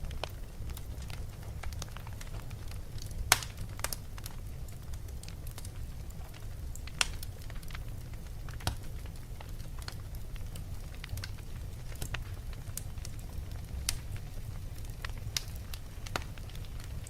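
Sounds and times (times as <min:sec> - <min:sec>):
fire crackling and popping: 0:00.0 - 0:17.0
fire rumbling: 0:00.0 - 0:17.0.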